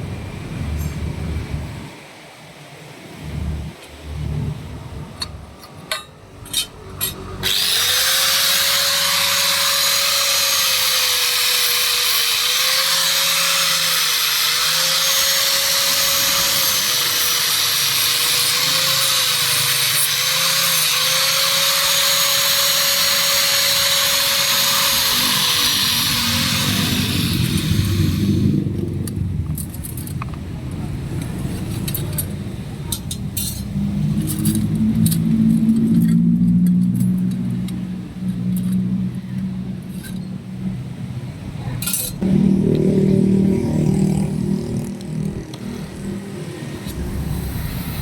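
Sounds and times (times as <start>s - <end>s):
electric power tool whining: 7.4s - 28.8s.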